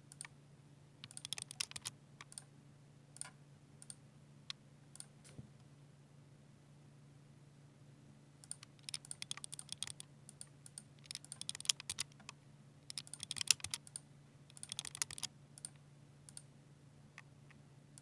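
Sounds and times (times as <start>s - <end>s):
mechanical keyboard typing: 1.0s - 2.5s, 8.4s - 12.3s, 12.9s - 16.4s.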